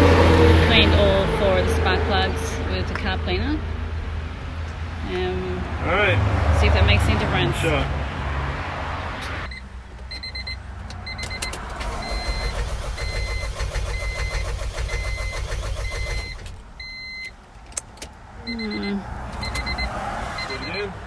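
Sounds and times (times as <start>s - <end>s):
car engine cranking: 9.1s - 20.9s
car warning chime beeping: 9.4s - 17.4s, 18.4s - 21.0s.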